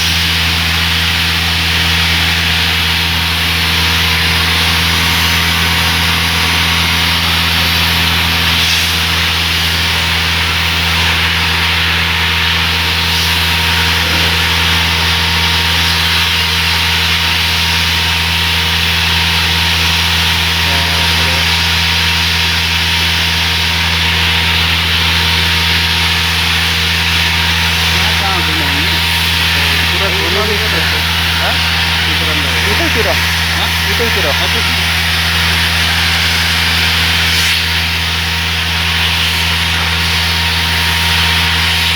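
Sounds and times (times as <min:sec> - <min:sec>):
construction machinery engine drone: 0:00.0 - 0:41.9.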